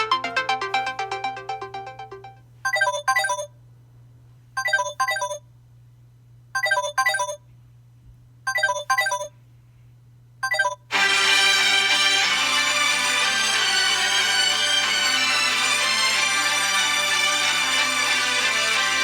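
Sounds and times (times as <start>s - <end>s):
electronic ringtone: 0.0s - 3.5s, 4.6s - 5.4s, 6.6s - 7.4s, 8.5s - 9.3s, 10.4s - 10.8s
melodic ringtone: 0.0s - 3.5s.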